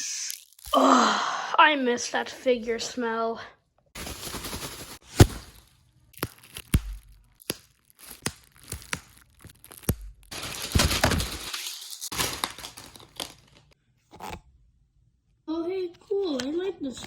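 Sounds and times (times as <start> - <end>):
packaging tearing and rustling: 0.3 - 0.8, 4.0 - 13.8
plastic and card crinkling: 0.3 - 0.8, 4.0 - 13.8.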